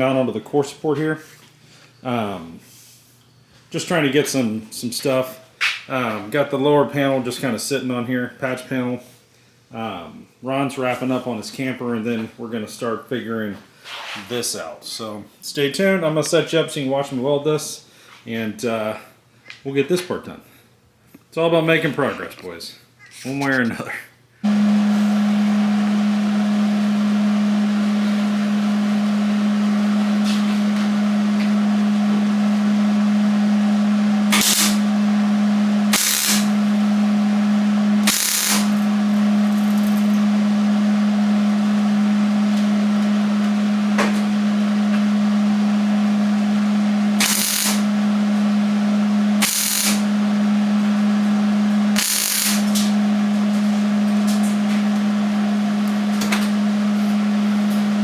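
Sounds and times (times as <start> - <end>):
steady low hum: 24.4 - 58.0
welding bursts: 34.3 - 35.0, 35.9 - 37.1, 38.0 - 40.2, 47.2 - 48.0, 49.4 - 50.2, 51.9 - 54.8.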